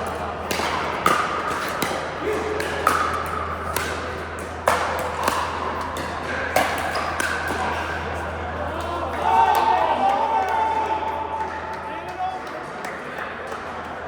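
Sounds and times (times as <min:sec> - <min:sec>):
paddles hitting plastic ball: 0:00.1 - 0:07.6.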